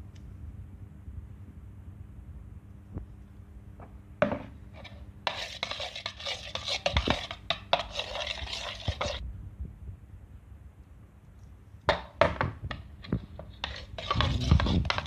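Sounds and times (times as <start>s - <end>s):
spoon stirring thick mixture: 4.7s - 9.2s, 11.9s - 15.0s.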